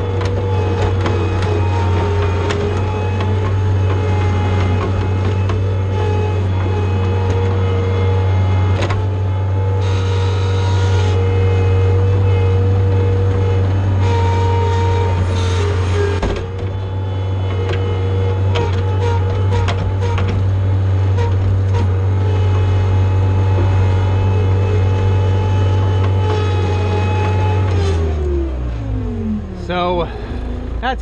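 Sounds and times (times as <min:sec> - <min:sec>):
constant whine: 0:00.0 - 0:31.0
diesel engine under load: 0:00.0 - 0:31.0
knocks and clicks: 0:00.1 - 0:07.6, 0:17.4 - 0:20.5.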